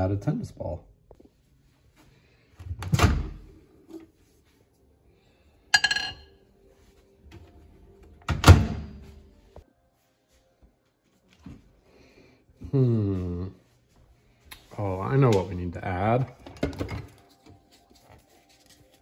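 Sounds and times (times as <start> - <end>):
dishware clink: 5.8 - 6.3.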